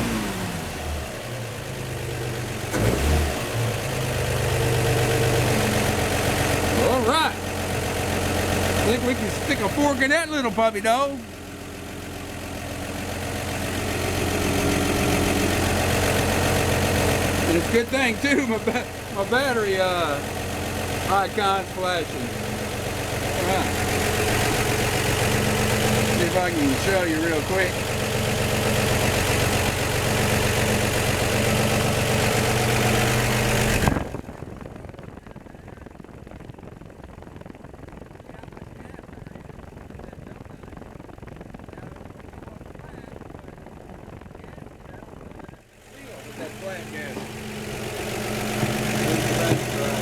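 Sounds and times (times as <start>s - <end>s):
car engine idling: 0.0s - 50.0s.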